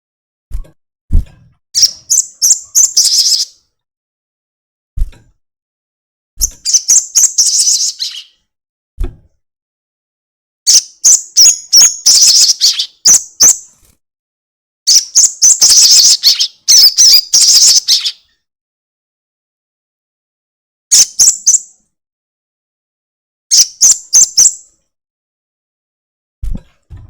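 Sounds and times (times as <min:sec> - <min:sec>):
short low thump: 0:00.5 - 0:01.6, 0:26.4 - 0:27.0.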